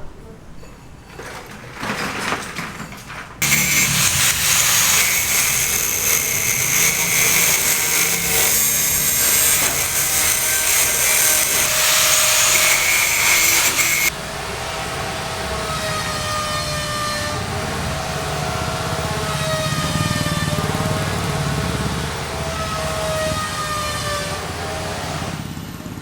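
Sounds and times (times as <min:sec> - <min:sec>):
power tool cutting with whine: 0:03.4 - 0:14.1.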